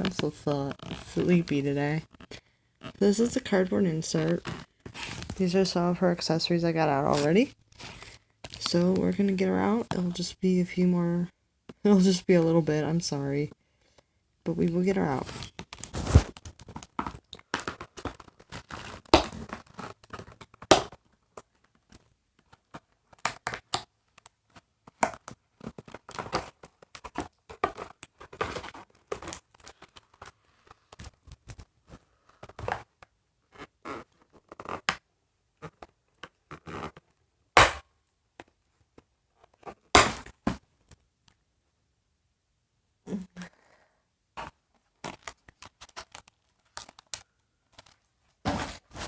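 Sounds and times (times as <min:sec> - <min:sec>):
cardboard and plastic crinkling: 0:15.1 - 0:23.4, 0:44.4 - 0:49.0.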